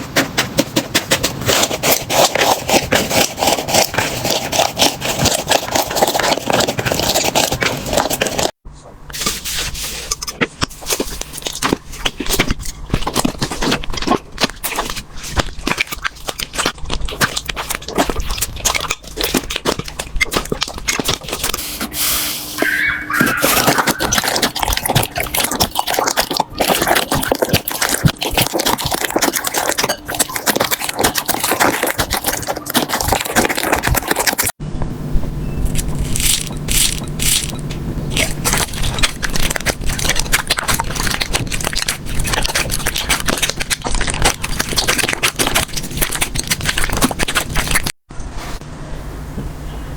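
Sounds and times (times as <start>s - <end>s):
slime crackling and popping: 35.6s - 48.0s.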